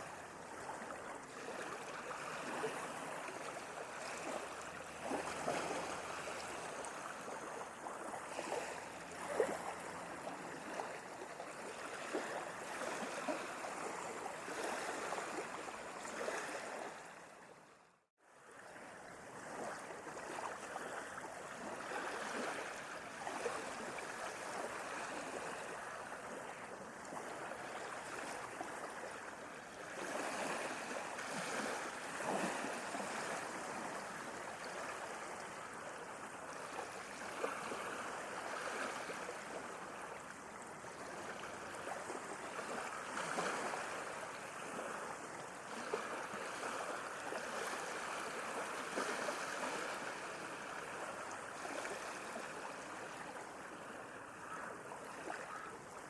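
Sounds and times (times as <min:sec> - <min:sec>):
sea waves washing on shore: 0:00.0 - 0:17.5, 0:18.5 - 0:56.0.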